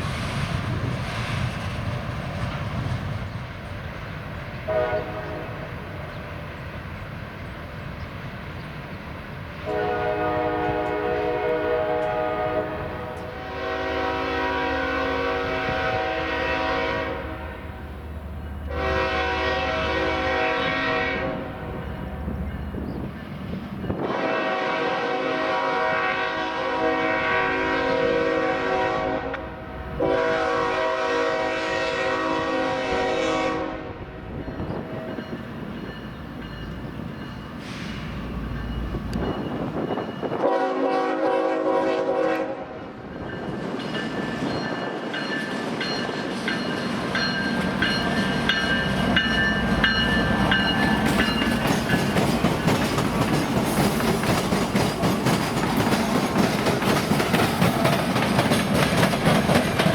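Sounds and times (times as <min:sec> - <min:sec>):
locomotive air horn blasts: 0:04.7 - 0:05.7, 0:09.6 - 0:17.8, 0:18.7 - 0:21.8, 0:24.0 - 0:34.1, 0:40.3 - 0:42.8
train wheels clattering: 0:43.2 - 0:59.9.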